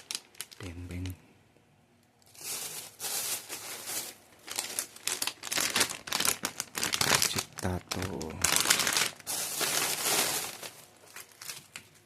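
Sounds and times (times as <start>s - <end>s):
plastic wrappers crinkling: 0.0s - 1.2s, 2.2s - 12.0s.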